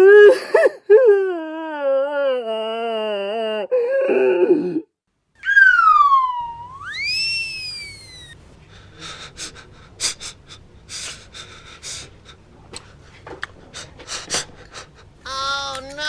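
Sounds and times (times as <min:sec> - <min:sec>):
whistle-like sliding tone: 0:05.4 - 0:08.4.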